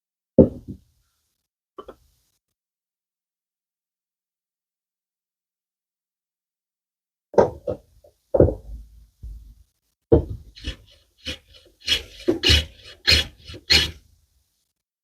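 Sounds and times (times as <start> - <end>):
wooden slats knocking: 10.1 - 10.8
hand plane scraping wood: 10.5 - 14.0.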